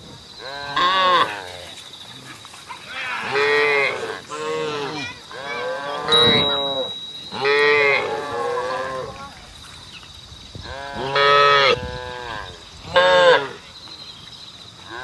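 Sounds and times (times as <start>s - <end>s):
cattle mooing: 3.2s - 9.3s.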